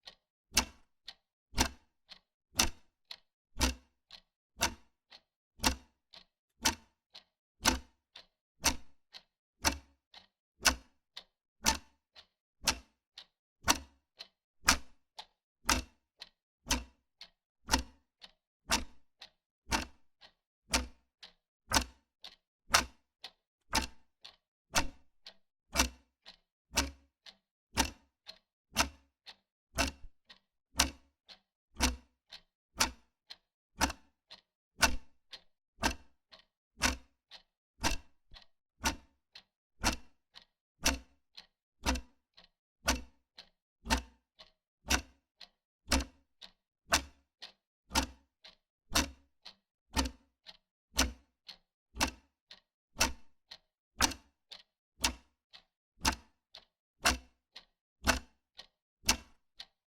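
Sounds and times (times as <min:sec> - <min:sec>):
wall clock ticking: 0:00.6 - 0:00.9, 0:09.6 - 0:10.9, 0:23.8 - 0:50.2, 0:51.0 - 0:55.3, 0:58.1 - 0:59.8.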